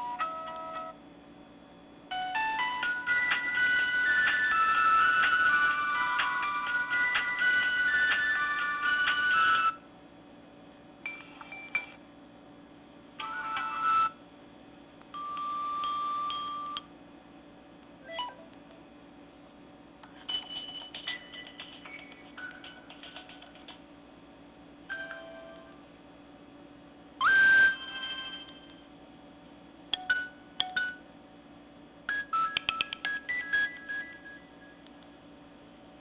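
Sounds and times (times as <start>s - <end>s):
melodic phone ringtone: 2.1s - 9.8s, 13.2s - 14.2s, 15.2s - 16.8s, 27.2s - 28.7s, 32.1s - 34.8s.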